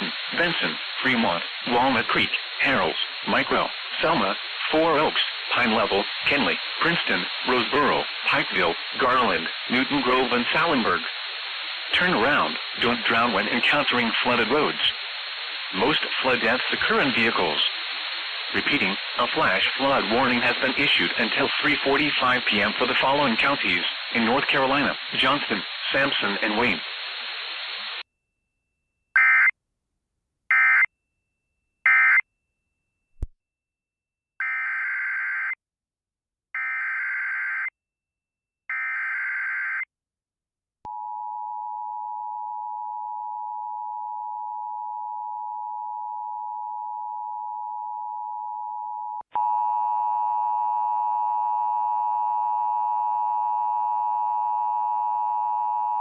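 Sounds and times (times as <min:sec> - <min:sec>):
short data bursts: 0:31.9 - 0:32.2.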